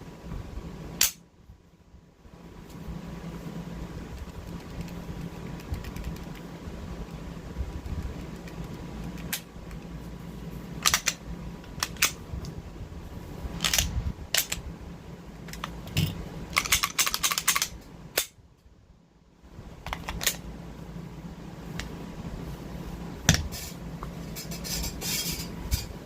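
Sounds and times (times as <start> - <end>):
low hum: 0.0 - 26.0
pistol mechanical clicks: 16.6 - 18.4.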